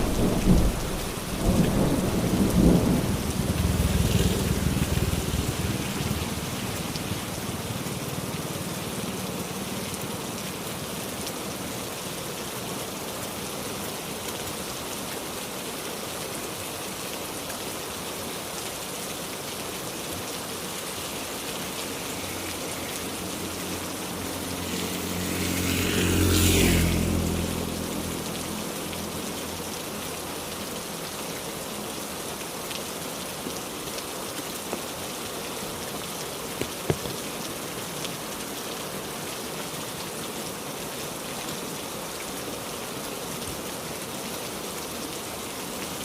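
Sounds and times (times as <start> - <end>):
thunder rumble: 0.0 - 7.5
heavy rain falling: 0.0 - 46.0
vehicle engine passing: 0.2 - 9.7, 21.0 - 29.7.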